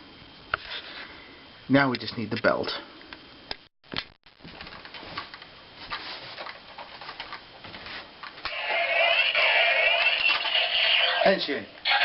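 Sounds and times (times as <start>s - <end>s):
electronic toy warbling tones: 8.5s - 12.0s.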